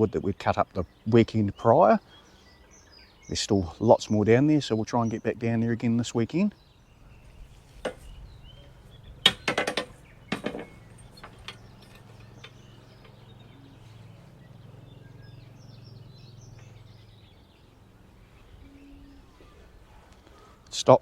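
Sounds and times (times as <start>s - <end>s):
birds chirping faintly: 0.0s - 21.0s
metal gate clanking and rattling: 9.2s - 13.4s.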